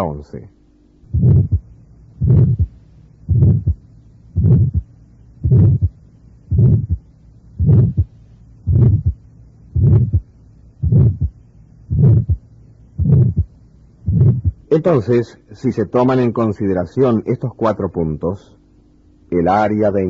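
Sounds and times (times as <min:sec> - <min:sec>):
heart murmur: 0:01.1 - 0:14.7
heartbeat through stethoscope: 0:01.1 - 0:14.7.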